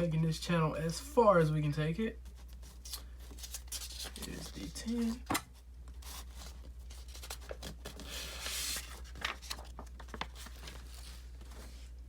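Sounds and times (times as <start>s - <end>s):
paper bills rustling: 2.4s - 11.9s.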